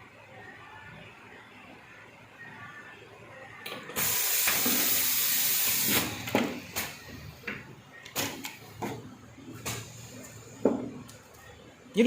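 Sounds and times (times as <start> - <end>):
machine hissing: 4.0 - 7.2.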